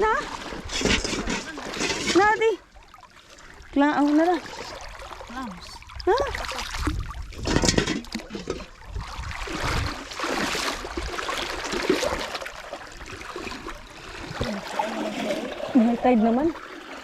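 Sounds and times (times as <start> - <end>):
seawater lapping among rocks: 0.0 - 17.0.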